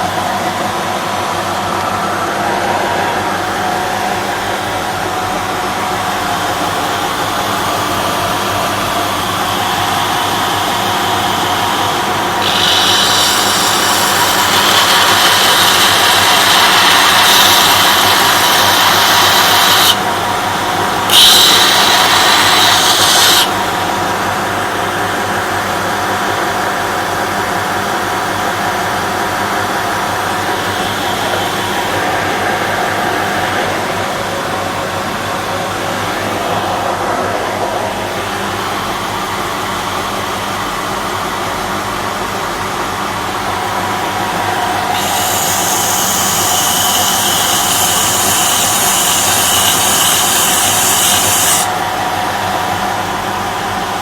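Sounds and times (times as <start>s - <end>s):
sanding belt grinding workpiece: 10.3s - 24.0s, 44.4s - 51.8s
belt grinder motor hum: 11.2s - 23.8s, 44.7s - 51.8s.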